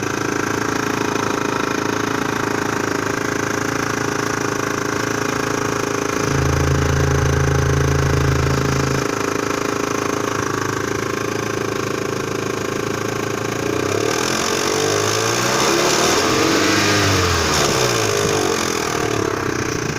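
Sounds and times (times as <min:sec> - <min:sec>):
knocking car engine revving: 0:06.2 - 0:09.4.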